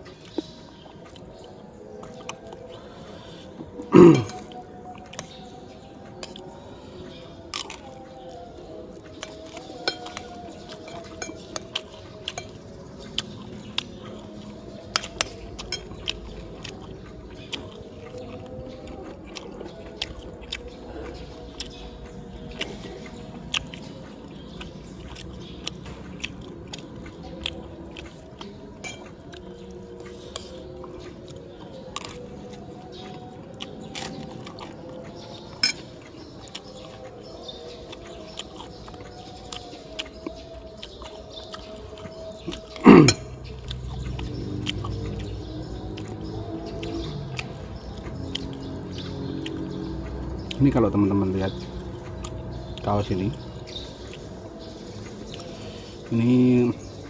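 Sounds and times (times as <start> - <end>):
utensils clinking against plate: 28.8 - 29.2.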